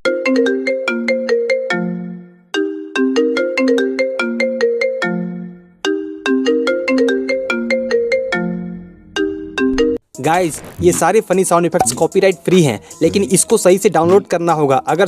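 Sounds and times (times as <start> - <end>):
plucked ringtone melody: 0.0 - 10.0.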